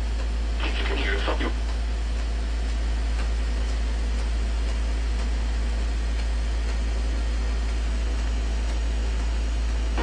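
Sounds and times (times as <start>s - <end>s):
low electrical hum: 0.0s - 10.0s
radio static hiss: 0.5s - 1.7s.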